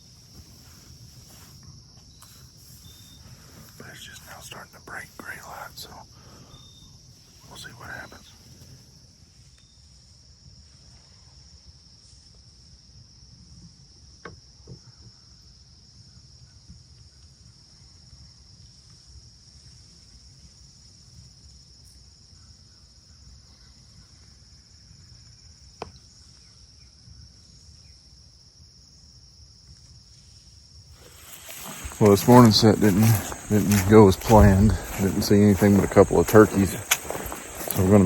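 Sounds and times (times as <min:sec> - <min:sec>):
insect chorus trilling: 0:00.0 - 0:09.0, 0:30.1 - 0:38.0
faint sharp clicks: 0:31.5 - 0:38.0.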